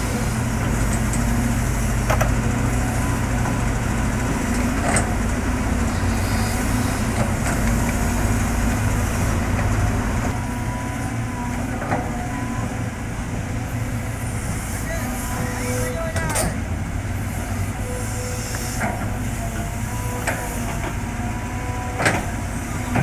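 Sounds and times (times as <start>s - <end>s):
heavy diesel engine running: 0.0s - 23.0s.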